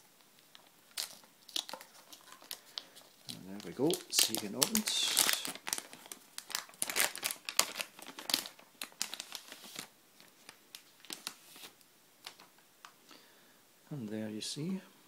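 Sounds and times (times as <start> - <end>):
plastic bag crinkling: 0.4 - 12.6.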